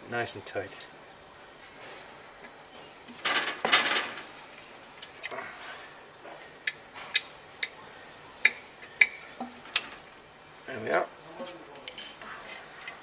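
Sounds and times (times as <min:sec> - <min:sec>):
metal scraping and rattling: 0:03.1 - 0:04.4
sharp metal clinks: 0:11.8 - 0:12.2.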